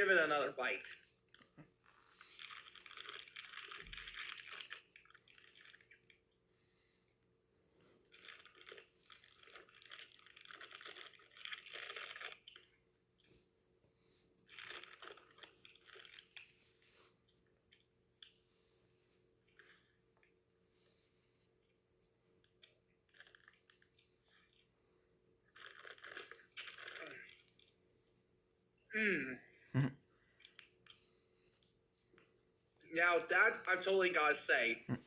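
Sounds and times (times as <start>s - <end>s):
person chewing crunchy popcorn: 2.0s - 6.2s, 8.0s - 12.7s, 14.4s - 16.5s, 22.6s - 24.6s, 25.5s - 27.7s.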